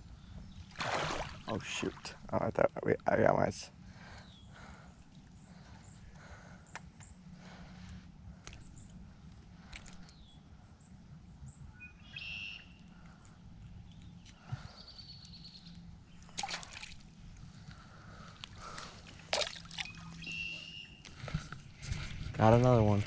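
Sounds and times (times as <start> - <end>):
water splashing: 0.7 - 2.2, 16.2 - 17.1, 19.2 - 20.2
birds chirping: 1.4 - 23.0.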